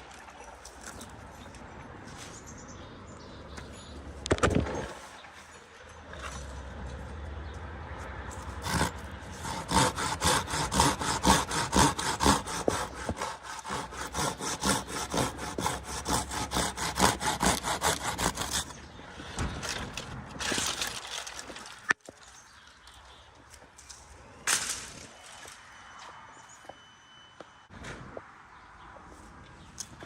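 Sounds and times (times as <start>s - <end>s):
hand saw cutting wood: 8.3s - 18.9s.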